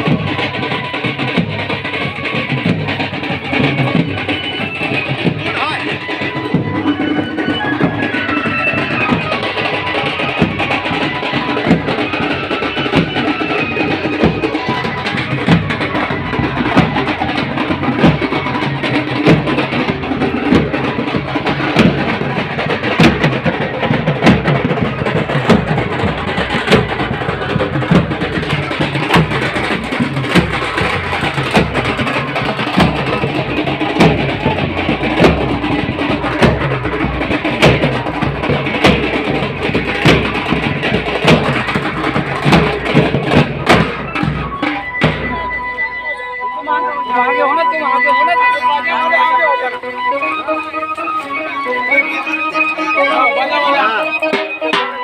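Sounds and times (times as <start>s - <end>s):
drums beating: 0.0s - 55.0s
plucked string melody: 30.8s - 55.0s.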